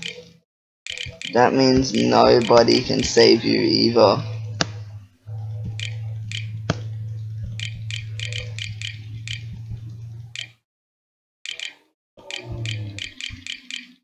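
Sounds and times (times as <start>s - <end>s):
keyboard keys clicking: 0.9s - 3.7s, 5.6s - 9.6s, 10.3s - 10.6s, 11.5s - 14.0s
steady low hum: 1.3s - 10.4s.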